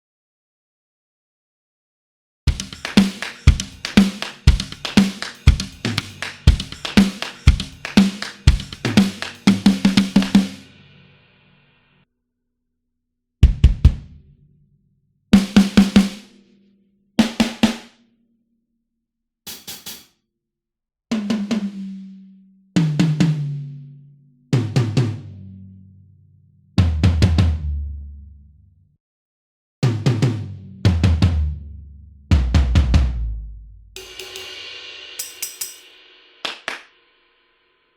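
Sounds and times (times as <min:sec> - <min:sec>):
kick drum hits: 0:02.5 - 0:10.4, 0:13.4 - 0:14.2
snare drum hits: 0:02.5 - 0:10.7, 0:19.5 - 0:20.1, 0:36.4 - 0:36.9
ringing tom drums: 0:02.5 - 0:11.1, 0:13.4 - 0:14.2, 0:15.4 - 0:16.2, 0:19.5 - 0:20.0, 0:34.0 - 0:36.7
cymbal hits: 0:02.5 - 0:11.8, 0:34.0 - 0:37.6.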